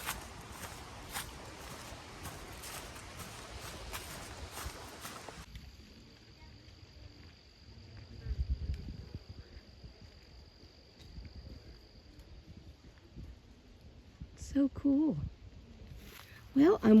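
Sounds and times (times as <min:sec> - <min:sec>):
cricket trilling: 0:00.0 - 0:12.7.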